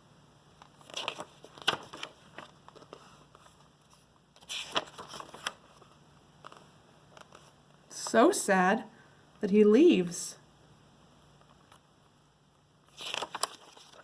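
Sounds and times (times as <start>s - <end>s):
faint handling rustles and clicks: 0.6s - 8.2s.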